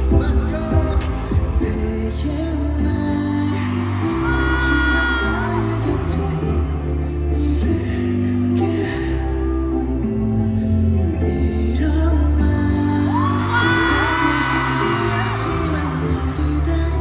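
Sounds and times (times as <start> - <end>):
live pop song over speakers: 0.0 - 17.0
audience whooping: 3.0 - 7.1, 13.0 - 17.0.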